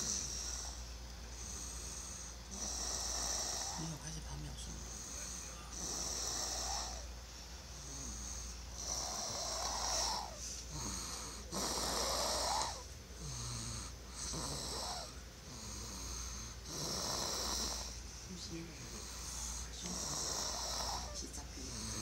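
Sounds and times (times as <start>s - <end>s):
child snoring: 0.0s - 0.8s, 1.4s - 4.1s, 4.8s - 7.1s, 7.7s - 18.0s, 18.8s - 22.0s.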